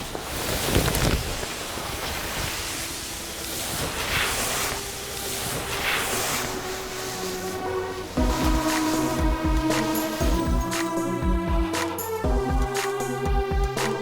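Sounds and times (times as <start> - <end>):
low rumble: 4.4 - 13.8.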